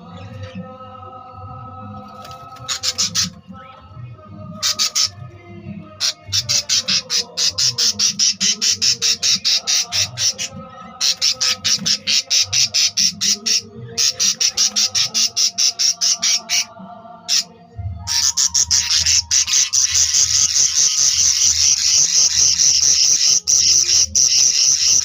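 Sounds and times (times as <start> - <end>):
budgerigar chicks cheeping: 2.5 - 3.4, 4.6 - 5.3, 5.9 - 16.7, 18.1 - 25.0.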